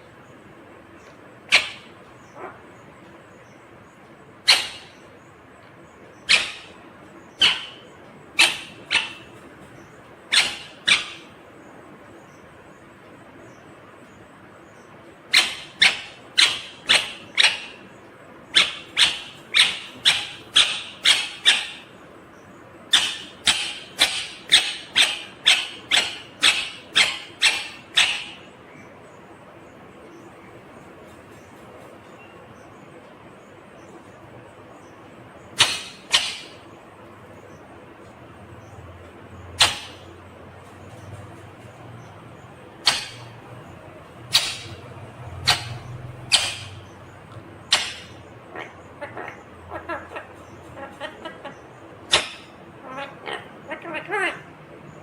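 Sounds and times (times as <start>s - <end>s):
parakeet squawking: 1.5s - 2.7s, 4.4s - 5.1s, 6.2s - 11.4s, 15.3s - 17.9s, 18.5s - 22.0s, 22.9s - 28.5s, 35.5s - 36.8s, 39.4s - 40.2s, 42.3s - 54.5s.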